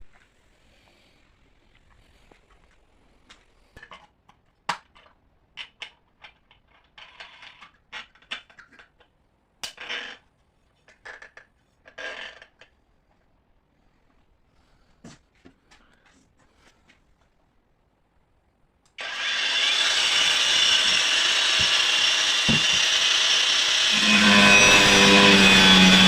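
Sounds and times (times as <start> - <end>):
hard objects clicking and knocking: 20.8 - 23.1.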